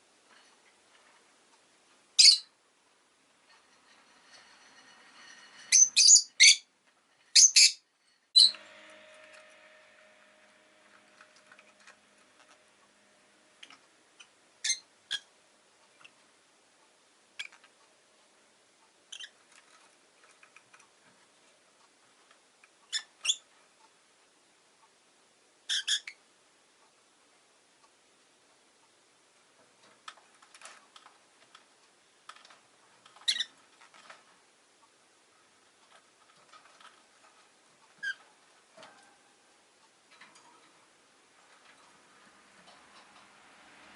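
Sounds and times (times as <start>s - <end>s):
light clicking and scratching: 0.2s - 2.0s, 3.3s - 6.0s, 8.0s - 14.4s, 15.8s - 24.0s, 28.8s - 43.5s
bird chirps: 2.2s - 2.5s, 5.7s - 6.7s, 7.4s - 7.8s, 8.4s - 8.7s
bird chirping: 2.2s - 2.6s, 5.7s - 6.7s, 7.3s - 7.8s, 8.4s - 8.9s, 14.2s - 15.3s, 19.1s - 19.4s, 22.9s - 23.5s, 25.7s - 26.2s.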